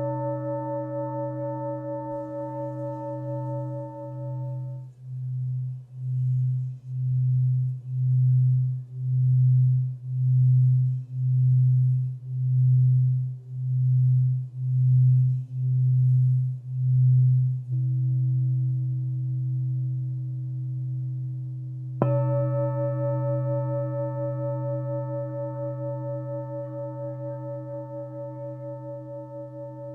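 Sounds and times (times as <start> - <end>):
singing bowl struck and ringing: 0.0 - 4.9, 22.0 - 29.9
singing bowl deep low tone: 0.0 - 29.9
singing bowl higher steady tone: 0.0 - 29.9.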